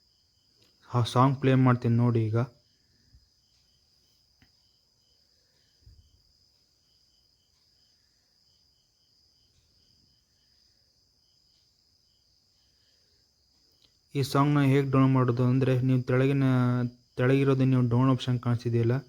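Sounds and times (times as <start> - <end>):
insect chirping: 0.0 - 19.0
click: 4.4 - 4.6, 13.7 - 14.0.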